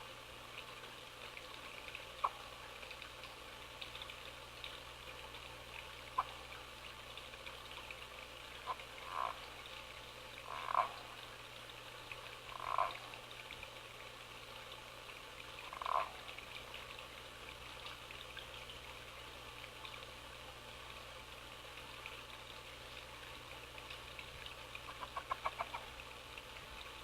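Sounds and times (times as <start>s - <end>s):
frog calls: 2.2s - 2.5s, 6.1s - 6.4s, 8.6s - 9.5s, 10.4s - 11.1s, 12.5s - 13.1s, 15.6s - 16.2s, 24.8s - 26.0s
high-pitched frog chorus: 2.2s - 2.5s, 8.6s - 9.6s, 10.4s - 11.1s, 12.5s - 13.1s, 15.6s - 16.3s, 24.8s - 26.0s.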